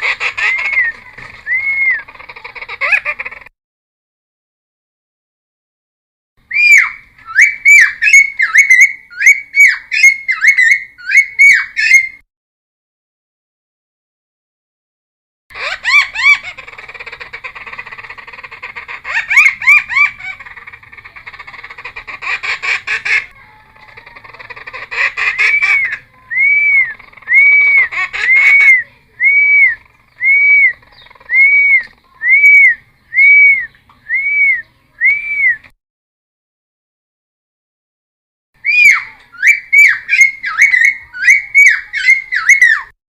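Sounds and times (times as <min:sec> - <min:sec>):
bird chattering and whistling: 0:00.0 - 0:03.5, 0:06.4 - 0:12.2, 0:15.5 - 0:35.7, 0:38.6 - 0:42.9
bird arched whistles: 0:00.4 - 0:02.1, 0:06.5 - 0:12.2, 0:25.1 - 0:35.7, 0:38.6 - 0:42.9.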